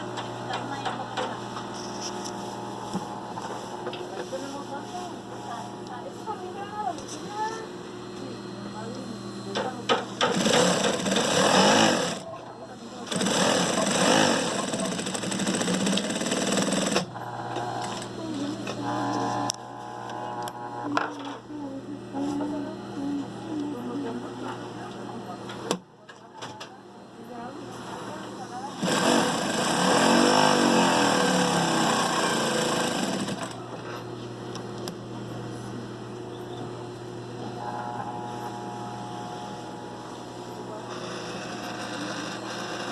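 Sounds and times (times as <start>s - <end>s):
steady motor hum: 0.0s - 42.9s
sewing machine running fast: 10.2s - 12.3s, 13.0s - 18.1s, 28.7s - 33.6s, 40.8s - 42.9s
steady low hum: 16.9s - 26.1s, 33.4s - 42.9s.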